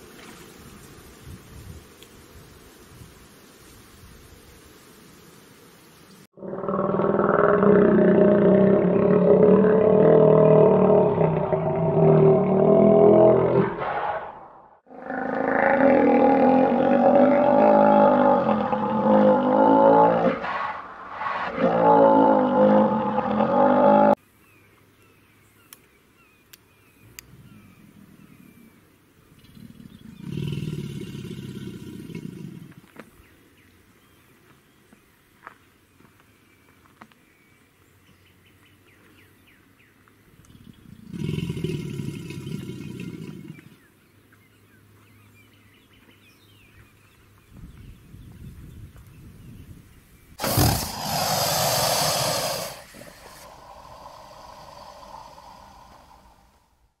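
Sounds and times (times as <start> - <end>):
alligator bellowing: 6.4 - 24.2, 29.6 - 32.8, 41.0 - 43.8, 50.4 - 56.8
low rumble: 52.9 - 56.9.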